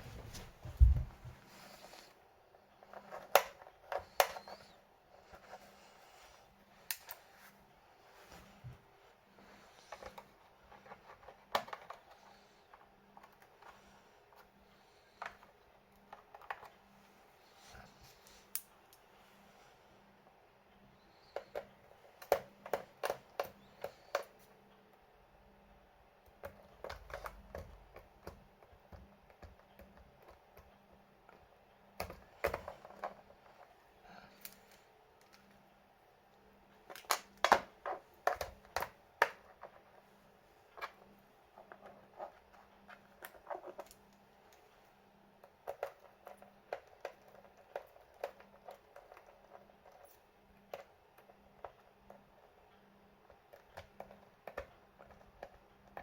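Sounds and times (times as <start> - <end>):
faint steady hum: 0.0 - 56.0
tools clicking on laptop parts: 2.8 - 4.8.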